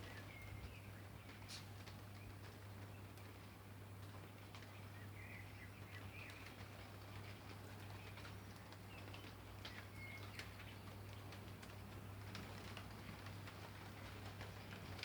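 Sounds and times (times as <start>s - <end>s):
light rain: 0.0s - 15.0s.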